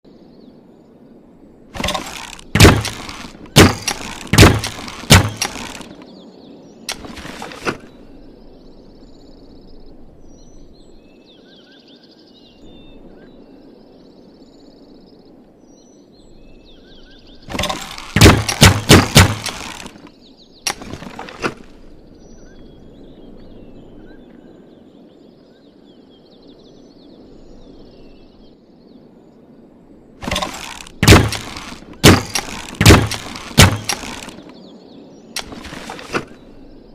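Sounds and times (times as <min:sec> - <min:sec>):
low steady background noise: 0:00.0 - 0:36.9
wooden crossbow clacks and snaps: 0:01.8 - 0:06.0, 0:06.9 - 0:07.8, 0:17.5 - 0:20.1, 0:20.7 - 0:21.8, 0:30.2 - 0:34.6, 0:35.4 - 0:36.4.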